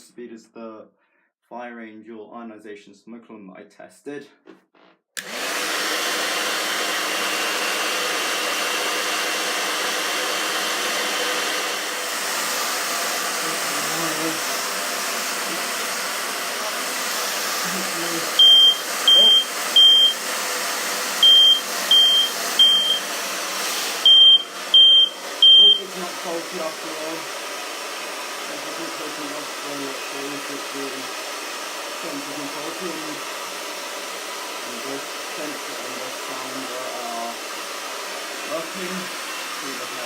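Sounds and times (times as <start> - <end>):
hair dryer blowing: 5.2 - 40.0
high-pitched alarm beeps: 18.4 - 20.2, 21.2 - 23.0, 24.0 - 25.8.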